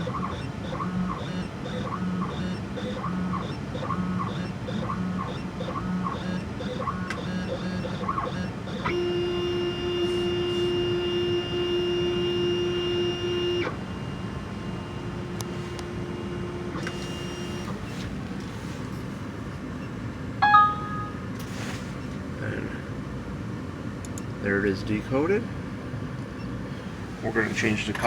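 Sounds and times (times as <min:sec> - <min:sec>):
key machine motor whine: 0:00.0 - 0:18.4.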